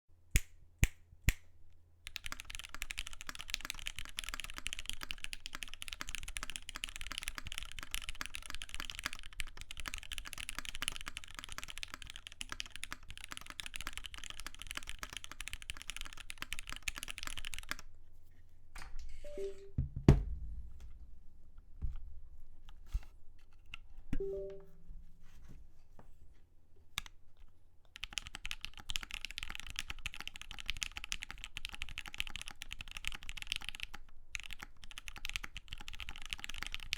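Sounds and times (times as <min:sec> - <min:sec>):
fast typing on mechanical keyboard: 0:02.1 - 0:17.9, 0:27.9 - 0:36.9
loud thump: 0:19.8 - 0:20.7.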